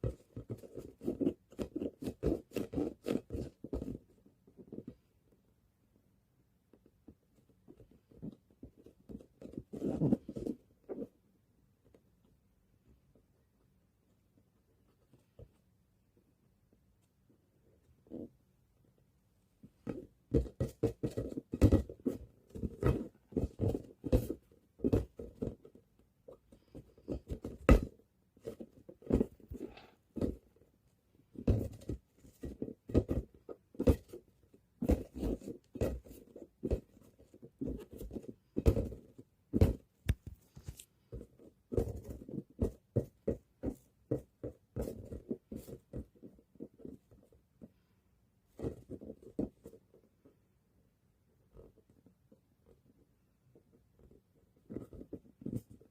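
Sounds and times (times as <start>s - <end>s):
ball bouncing with dull thuds: 0.0s - 5.1s, 6.7s - 11.2s, 19.6s - 47.7s, 48.4s - 49.8s, 53.7s - 55.9s.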